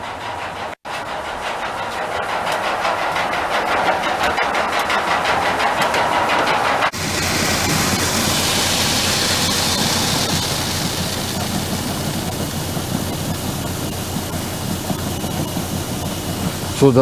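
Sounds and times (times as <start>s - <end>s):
rhythmic machine sound: 0.0s - 17.0s
auger humming: 6.8s - 17.0s
grain pouring into hopper: 6.9s - 17.0s.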